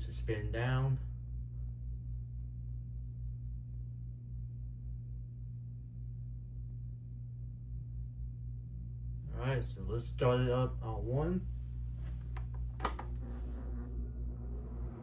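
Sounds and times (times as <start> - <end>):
steady low hum: 0.0 - 15.0
fan blades spinning down: 9.3 - 15.0.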